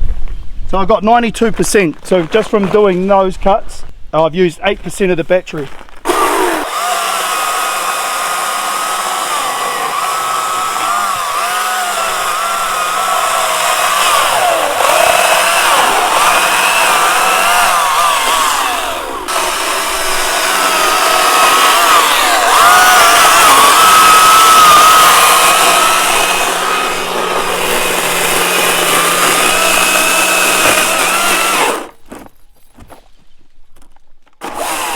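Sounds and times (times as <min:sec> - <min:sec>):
electric chainsaw whining: 0:06.1 - 0:32.0, 0:34.4 - 0:34.9.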